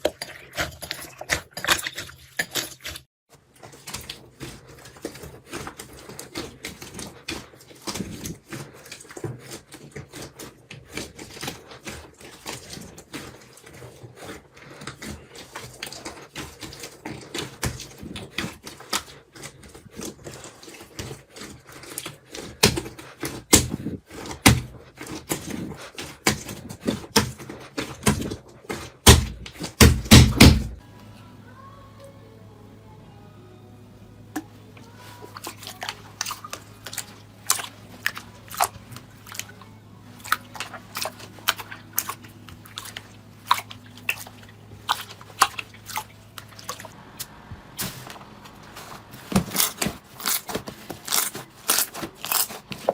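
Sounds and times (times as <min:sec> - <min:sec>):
slime crackling and popping: 0:49.5 - 0:52.9.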